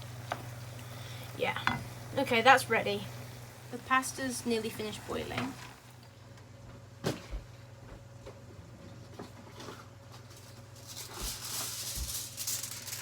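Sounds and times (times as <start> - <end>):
kitchen foil crinkling: 9.6 - 13.0.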